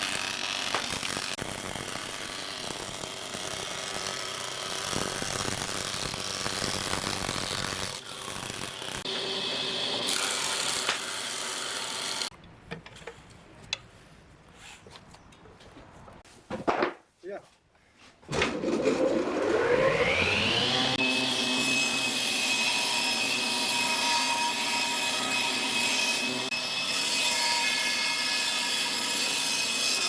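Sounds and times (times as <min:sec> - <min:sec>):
power tool whirring on wood: 0:00.0 - 0:12.3, 0:19.0 - 0:27.0.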